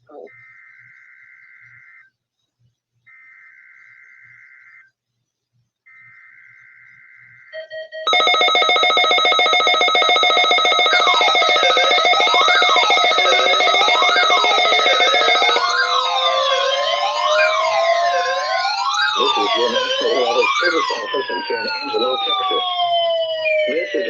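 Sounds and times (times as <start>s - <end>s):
loud buzzing alarm tone: 5.9s - 24.0s
two-tone data warble: 7.4s - 24.0s.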